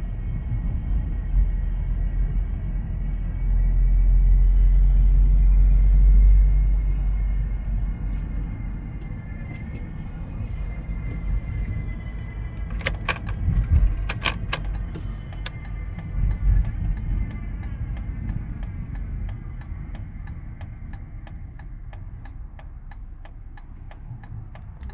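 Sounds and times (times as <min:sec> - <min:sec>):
low rumble: 0:00.0 - 0:24.9
regular ticking: 0:12.6 - 0:24.9
sharp clicks: 0:12.6 - 0:24.9.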